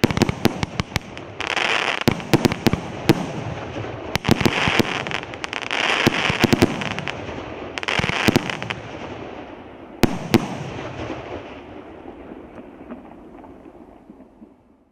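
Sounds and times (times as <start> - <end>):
firework crackling hiss: 0.0 - 11.8.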